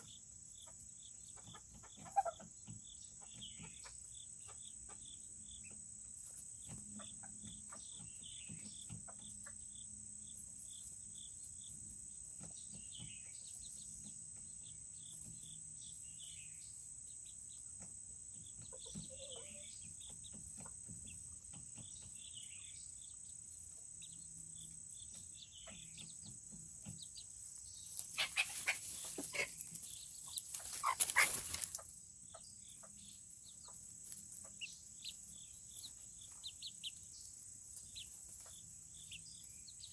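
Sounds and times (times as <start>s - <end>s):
chicks peeping: 0.0s - 39.9s
rustling and scratching: 26.2s - 32.0s, 33.6s - 39.9s.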